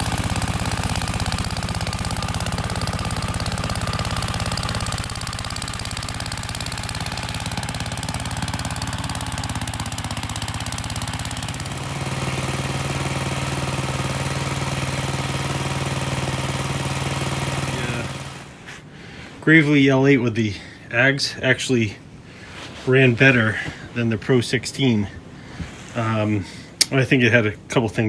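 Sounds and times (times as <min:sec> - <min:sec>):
tractor engine running: 0:00.0 - 0:18.7.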